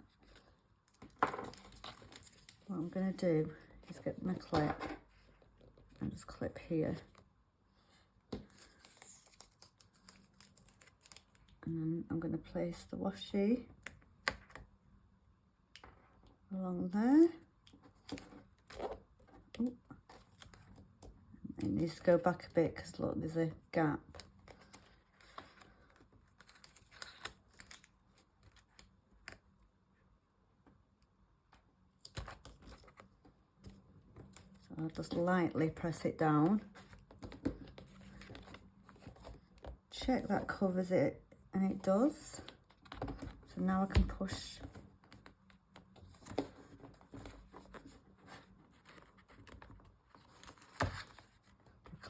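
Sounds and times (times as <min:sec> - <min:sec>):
paper and tape rustling: 0:00.0 - 0:03.2, 0:08.4 - 0:11.6, 0:24.1 - 0:29.4, 0:42.0 - 0:52.0.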